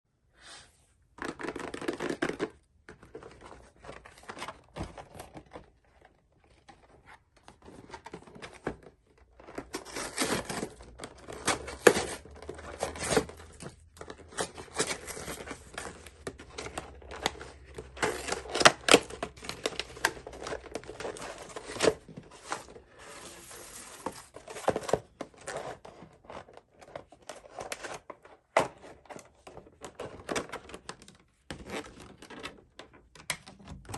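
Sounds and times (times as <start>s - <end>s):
plastic wrap and cardboard tearing: 9.2s - 28.1s.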